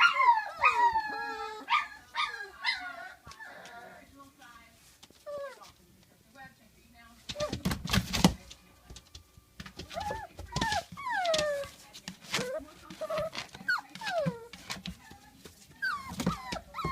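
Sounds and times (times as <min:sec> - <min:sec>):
puppies whimpering: 0:00.0 - 0:04.0, 0:09.9 - 0:14.7, 0:15.8 - 0:16.9.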